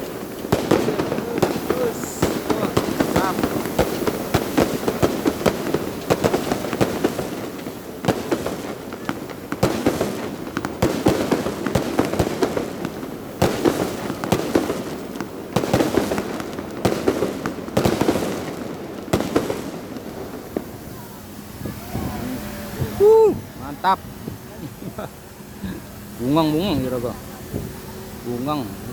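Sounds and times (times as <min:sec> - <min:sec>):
fireworks bangs and crackles: 0:00.0 - 0:28.9.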